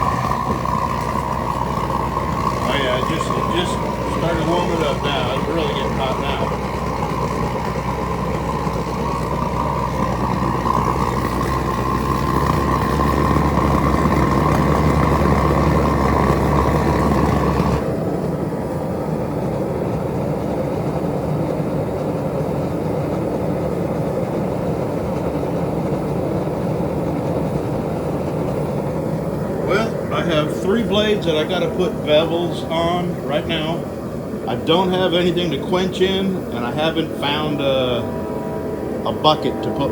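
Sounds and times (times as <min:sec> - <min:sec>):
burner whistling tone: 0:00.0 - 0:18.0, 0:27.4 - 0:39.9
deep rumble: 0:00.0 - 0:18.0
gas burner roaring: 0:00.0 - 0:39.9.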